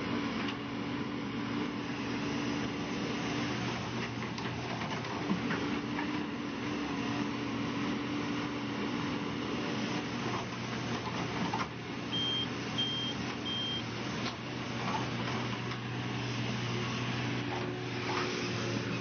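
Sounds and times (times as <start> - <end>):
reversing alarm beeping: 12.1 - 13.9.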